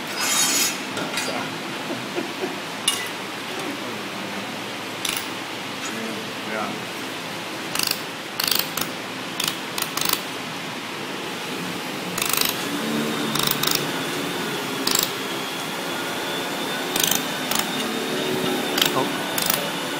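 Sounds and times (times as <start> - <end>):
steady background hiss: 0.0 - 19.9.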